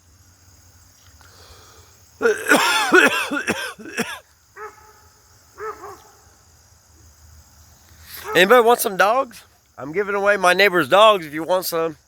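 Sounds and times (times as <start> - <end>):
dogs barking: 4.6 - 6.2, 8.2 - 8.8.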